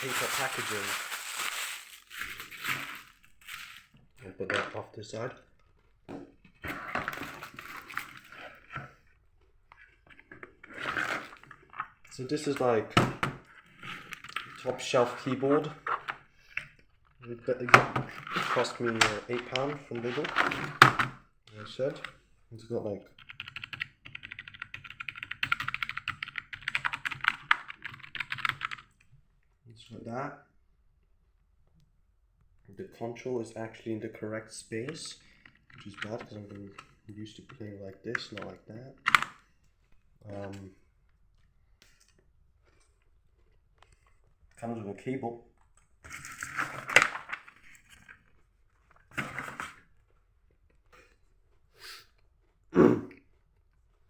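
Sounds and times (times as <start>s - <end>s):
packaging rustling: 0.0s - 4.0s, 46.1s - 48.3s.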